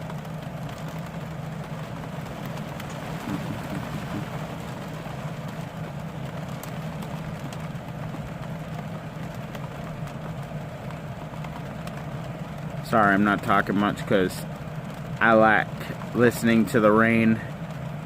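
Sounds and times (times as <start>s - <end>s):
rain on a vehicle roof: 0.0s - 18.0s
air conditioner hum: 2.2s - 5.5s.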